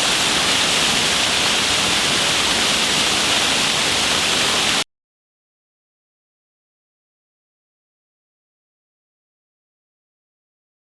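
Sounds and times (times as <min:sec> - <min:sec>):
waterfall rushing: 0:00.0 - 0:04.8.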